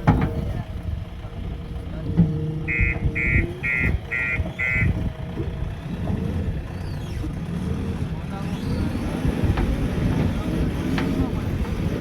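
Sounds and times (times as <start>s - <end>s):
diesel engine running: 0.0s - 12.0s
reversing alarm beeps: 2.7s - 5.0s.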